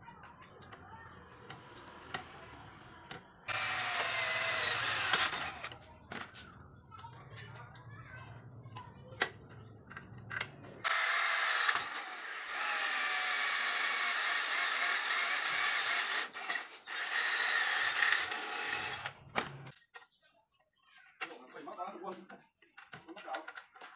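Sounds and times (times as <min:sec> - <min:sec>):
small motor whirring: 0:03.5 - 0:05.8, 0:10.8 - 0:19.7.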